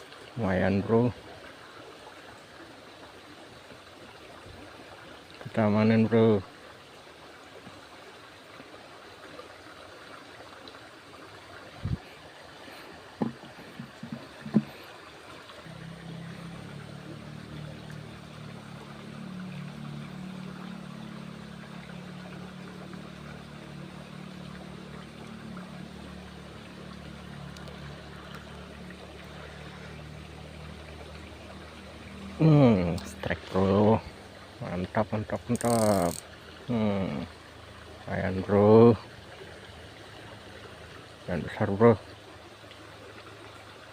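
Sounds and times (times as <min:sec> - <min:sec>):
flowing water: 0:00.0 - 0:43.9
low engine hum: 0:10.8 - 0:43.9.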